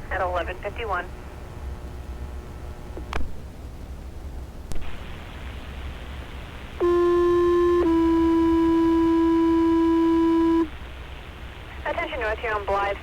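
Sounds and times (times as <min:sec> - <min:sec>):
radio channel hiss: 0:00.0 - 0:03.2, 0:04.8 - 0:13.0
scanner radio clicks: 0:02.9 - 0:03.4
two-tone pager alert: 0:06.8 - 0:10.7.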